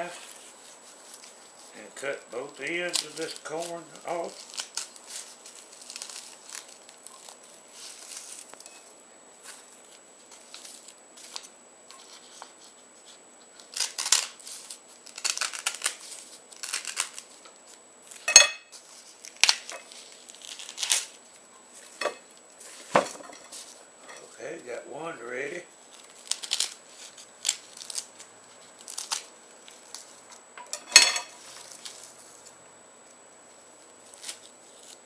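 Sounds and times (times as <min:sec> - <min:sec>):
knife cutting corn husk: 0:00.0 - 0:08.9, 0:13.6 - 0:17.3, 0:18.8 - 0:21.2, 0:25.9 - 0:30.2, 0:34.0 - 0:35.0
husk crunching and crackling: 0:00.0 - 0:12.6, 0:13.5 - 0:24.3, 0:25.8 - 0:35.0.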